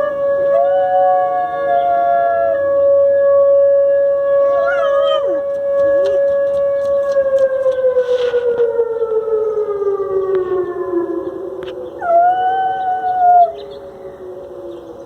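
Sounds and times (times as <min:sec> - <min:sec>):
siren winding down: 0:00.0 - 0:15.0
dog howling: 0:04.4 - 0:06.2, 0:11.9 - 0:14.9.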